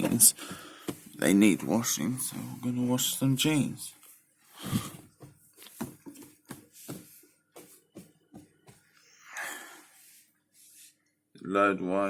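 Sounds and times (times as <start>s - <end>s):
fabric rustling and thumping: 0.0s - 3.8s, 4.6s - 8.9s.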